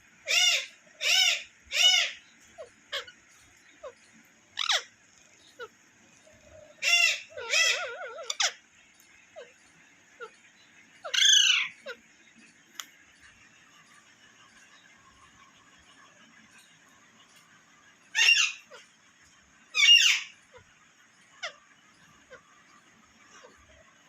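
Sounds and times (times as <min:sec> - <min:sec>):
parrot screeching: 0:00.2 - 0:03.1, 0:04.6 - 0:04.9, 0:06.7 - 0:08.6, 0:11.0 - 0:12.0, 0:18.1 - 0:18.8, 0:19.7 - 0:20.6
faint clicks: 0:12.6 - 0:13.0.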